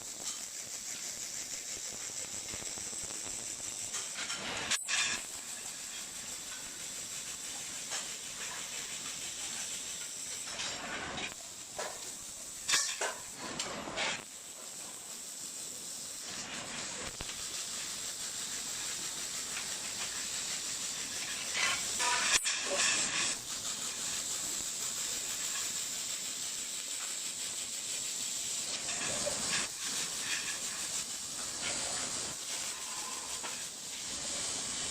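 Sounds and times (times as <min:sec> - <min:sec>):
welding arc hissing: 0:00.0 - 0:34.9
welding crackles: 0:00.0 - 0:34.9.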